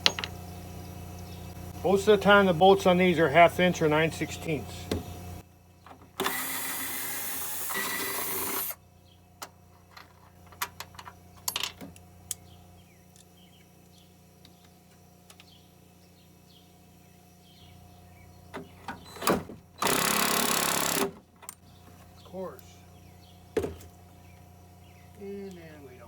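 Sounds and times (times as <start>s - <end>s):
power drill spinning: 6.2s - 8.8s, 19.8s - 21.1s.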